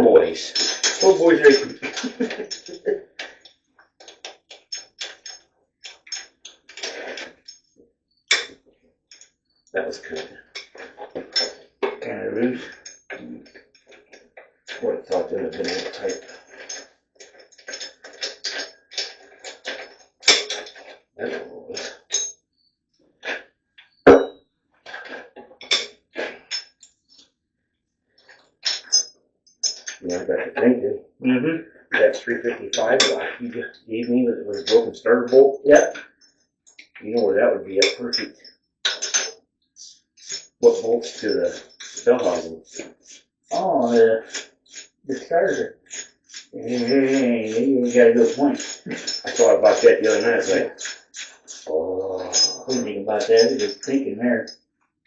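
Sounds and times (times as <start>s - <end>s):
metal engine parts clanking: 0.5s - 2.8s, 15.1s - 20.8s.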